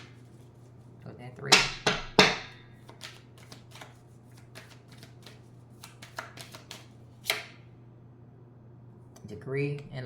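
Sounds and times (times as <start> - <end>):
card snapping: 2.8 - 7.5
cards being shuffled: 2.8 - 7.5.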